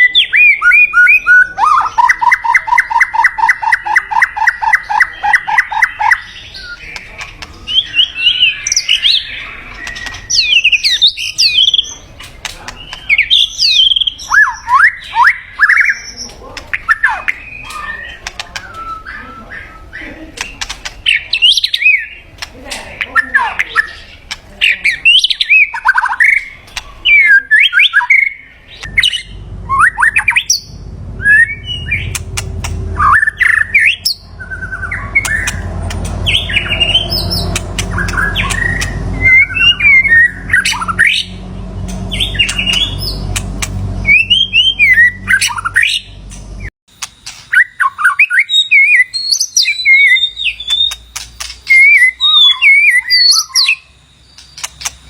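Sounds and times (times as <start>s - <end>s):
bird singing whistled phrases: 0.0s - 7.0s, 12.9s - 16.2s, 16.9s - 22.2s, 27.1s - 32.2s, 33.0s - 43.4s, 44.0s - 46.2s, 47.5s - 55.0s
low rumble: 28.8s - 46.7s.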